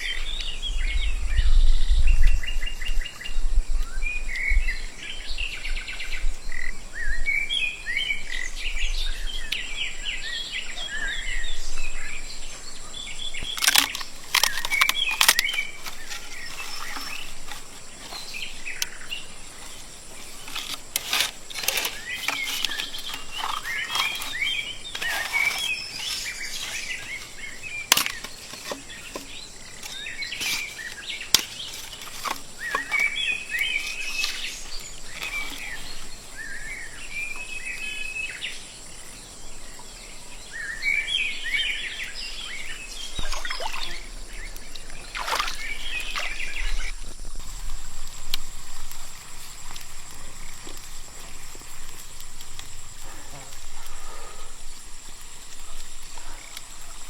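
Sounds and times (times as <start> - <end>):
birds chirping: 0.0 - 57.0.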